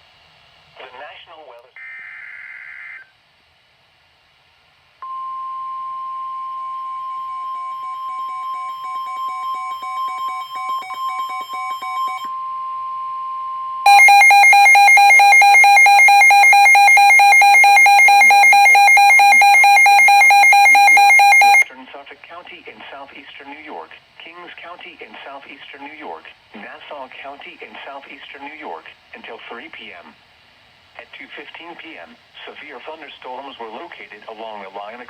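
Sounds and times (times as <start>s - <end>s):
steady warning alarm tone: 5.0s - 21.7s
rapidly pulsing radio alarm: 7.0s - 12.3s, 13.8s - 21.7s
quiet receiver beeping: 13.9s - 21.6s.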